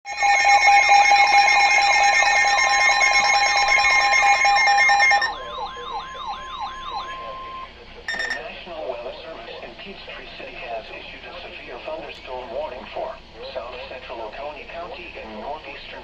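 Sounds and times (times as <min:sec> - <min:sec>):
steady warning tone: 0:00.1 - 0:08.6
pulsing lower tone: 0:02.6 - 0:08.4.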